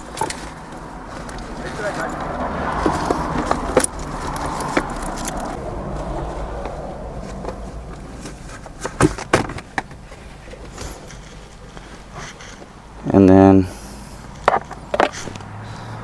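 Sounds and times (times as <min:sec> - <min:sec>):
interior trim clicking and knocking: 0:02.2 - 0:06.0, 0:06.6 - 0:12.8.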